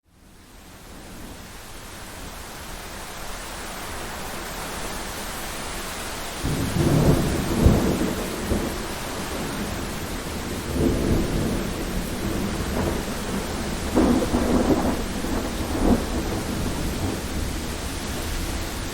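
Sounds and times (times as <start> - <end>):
rain hissing: 0.2 - 18.9
thunder rumbling: 6.4 - 18.9.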